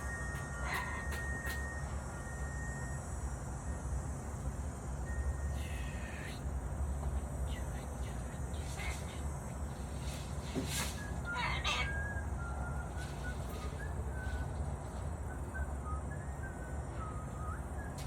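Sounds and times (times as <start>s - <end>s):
chicken calling: 11.2s - 12.4s.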